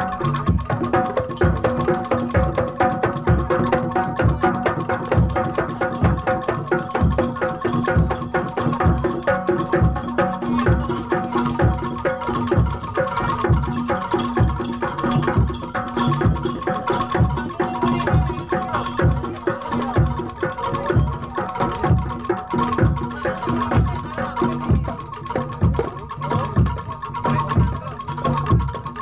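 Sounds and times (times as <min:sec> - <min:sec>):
hand drum strikes: 0:00.0 - 0:29.0.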